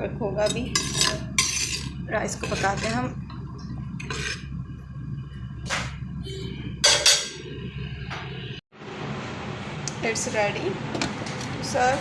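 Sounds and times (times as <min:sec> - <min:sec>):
steady low hum: 0:00.0 - 0:12.0
utensils clattering in a pot: 0:00.4 - 0:03.2, 0:04.0 - 0:04.5, 0:06.8 - 0:07.4.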